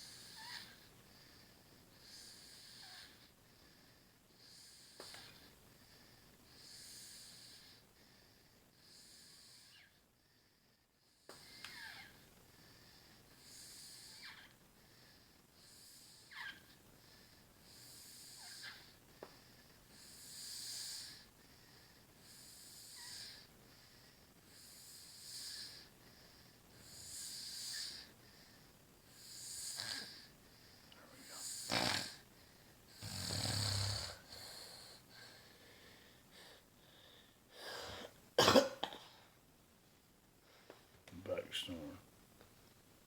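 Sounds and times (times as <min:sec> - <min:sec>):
woman snoring: 0:29.3 - 0:30.3, 0:31.2 - 0:32.2, 0:33.0 - 0:35.0.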